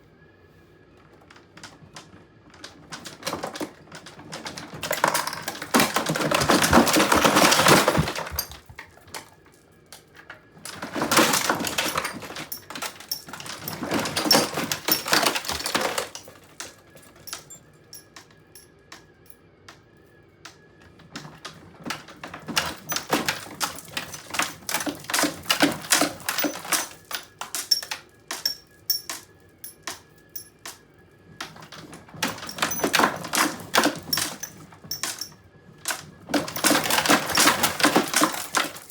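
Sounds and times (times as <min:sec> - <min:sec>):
dollhouse pieces rattling: 0:02.6 - 0:09.5, 0:10.7 - 0:18.2, 0:21.9 - 0:30.8, 0:31.4 - 0:38.9.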